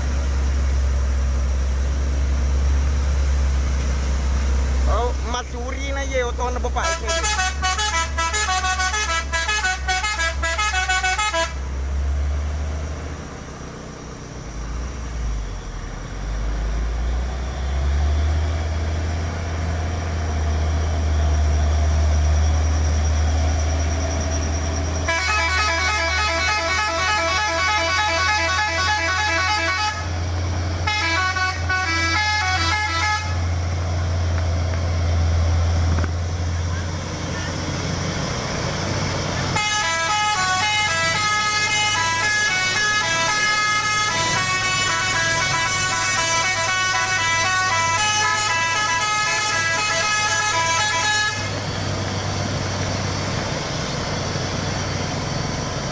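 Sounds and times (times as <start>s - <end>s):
diesel engine droning: 0.0s - 55.9s
musical multi-tone truck horn: 6.8s - 11.7s, 25.0s - 33.7s, 39.4s - 51.7s.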